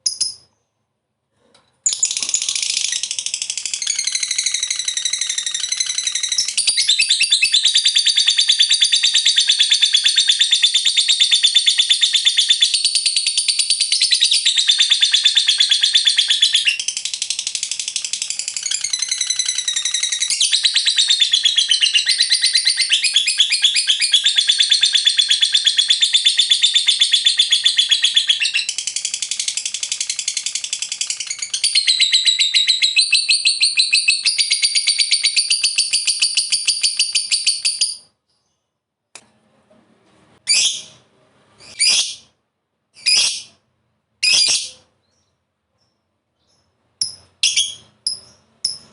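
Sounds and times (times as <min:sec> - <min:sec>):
lovebird chattering trill: 0:47.0 - 0:48.9.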